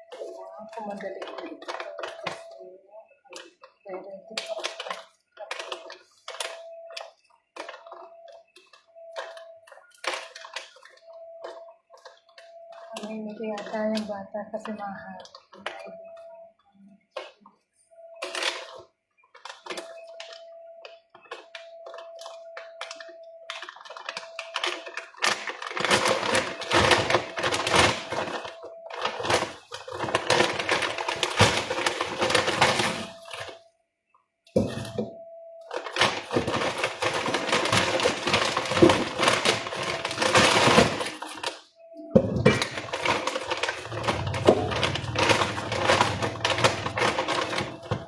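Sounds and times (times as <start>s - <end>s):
kitchen clatter knocks and clacks: 36.0s - 41.5s, 42.2s - 48.0s.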